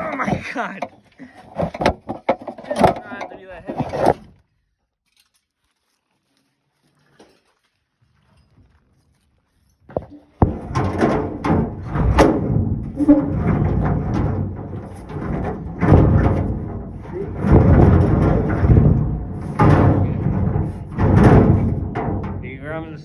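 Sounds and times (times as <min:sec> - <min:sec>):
knocks and thumps: 0:00.0 - 0:04.3, 0:09.9 - 0:23.0
metal tool chest rolling: 0:00.0 - 0:04.3, 0:09.9 - 0:23.0.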